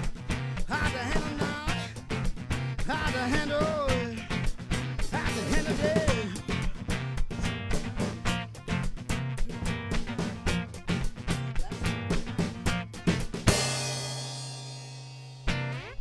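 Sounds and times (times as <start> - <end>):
strummed guitar chords: 0.0 - 16.0
drum hits: 5.3 - 15.6.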